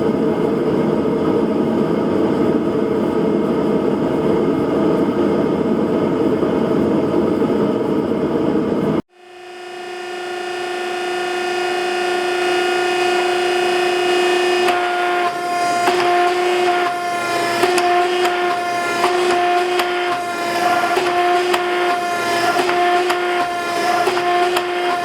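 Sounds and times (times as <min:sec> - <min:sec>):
hydraulic pump motor whine: 0:09.1 - 0:25.0
sharp metallic knocks: 0:14.6 - 0:25.0.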